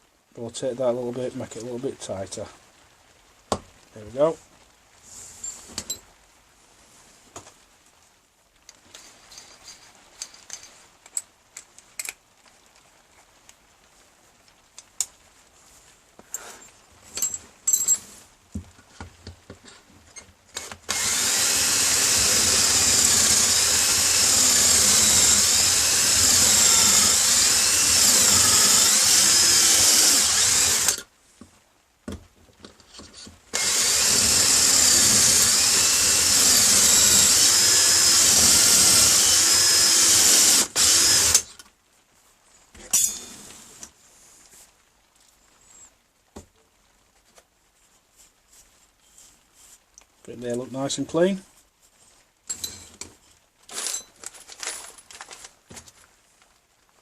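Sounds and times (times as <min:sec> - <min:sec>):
drill boring into wood: 0:20.6 - 0:31.1, 0:33.5 - 0:41.6
clicks and knocks of handling wood: 0:31.4 - 0:33.4.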